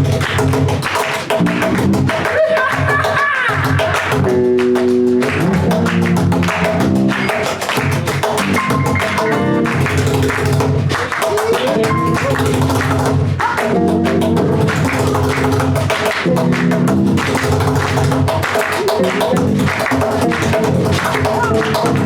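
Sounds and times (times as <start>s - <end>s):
fast drumbeat: 0.0s - 22.0s
guitar chords: 4.2s - 10.9s, 11.6s - 22.0s.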